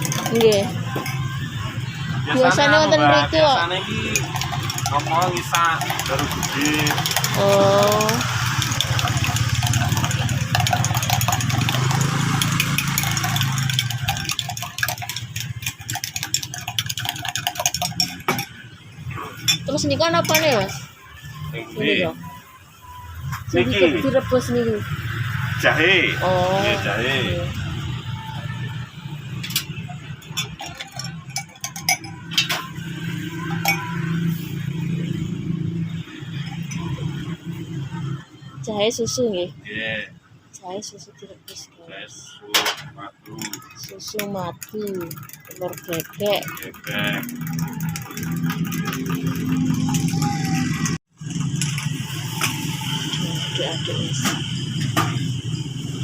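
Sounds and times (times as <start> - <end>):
glassware and utensils clinking: 0.0 - 1.6, 3.6 - 21.0, 29.3 - 34.6, 36.4 - 37.3, 42.5 - 55.6
small engine running: 4.1 - 18.3, 44.6 - 56.0.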